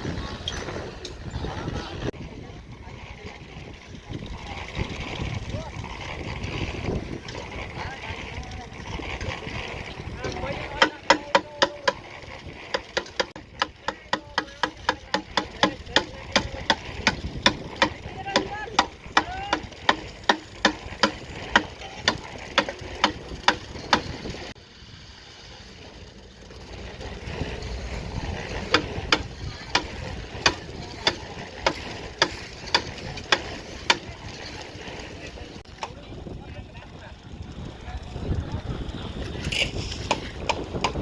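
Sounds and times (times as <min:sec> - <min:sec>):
low engine rumble: 0:00.0 - 0:41.0
rapid mechanical knocking: 0:10.0 - 0:24.5, 0:26.4 - 0:34.4, 0:40.0 - 0:41.0.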